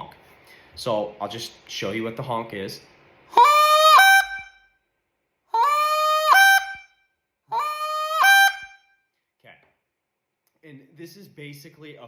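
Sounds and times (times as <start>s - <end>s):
goose call honks: 3.4s - 4.5s, 7.5s - 8.8s.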